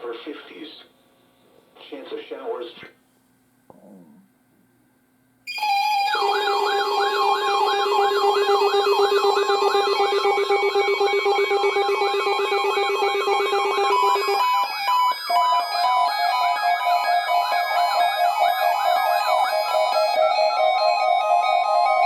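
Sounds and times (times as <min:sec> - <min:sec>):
warbling alert tone: 0:05.5 - 0:15.6.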